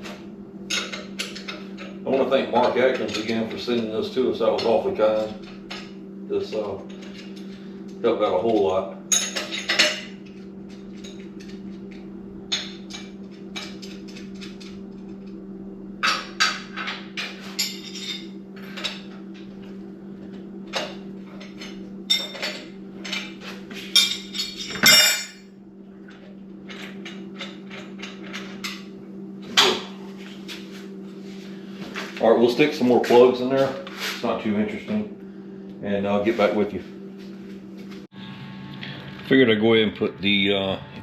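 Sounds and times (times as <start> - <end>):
steady low hum: 0.0 - 41.0
metal tools clinking: 24.0 - 25.4
scraping rattle: 24.6 - 25.4.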